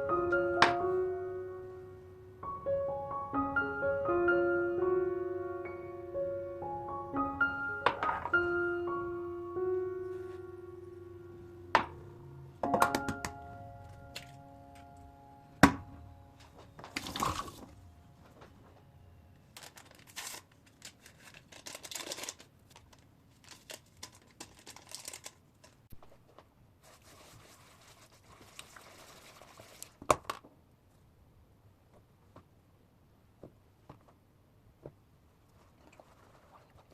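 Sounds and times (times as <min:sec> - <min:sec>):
rustling and crinkling: 0:16.4 - 0:31.0.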